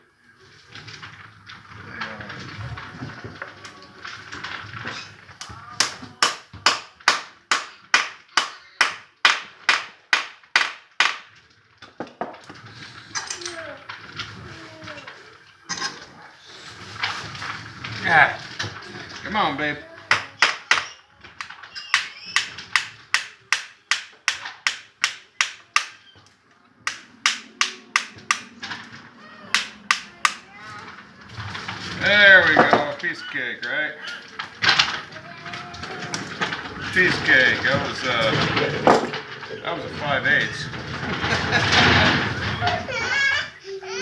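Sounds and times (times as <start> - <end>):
sharp strikes: 26.9 - 28.5, 29.6 - 30.5
hand tool metallic clicks: 26.9 - 28.6.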